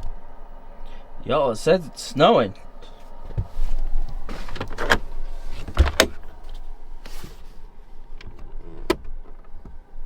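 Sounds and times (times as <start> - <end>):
heavy door thump: 4.3 - 6.3
sharp door click: 5.7 - 6.3.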